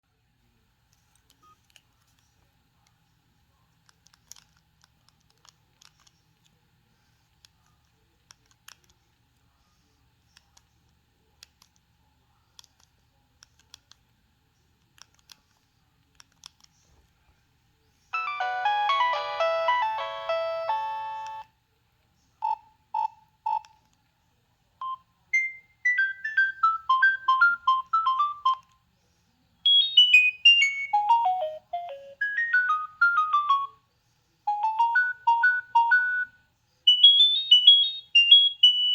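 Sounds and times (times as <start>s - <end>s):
phone ringtone beeping tunes: 18.2s - 21.4s, 24.8s - 28.6s, 29.7s - 33.8s, 34.5s - 36.3s, 36.9s - 38.9s.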